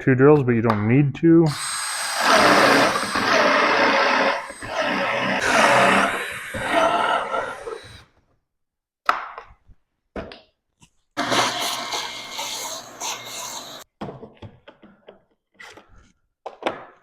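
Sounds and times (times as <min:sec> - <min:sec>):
power drill boring into wood: 0:01.5 - 0:08.0.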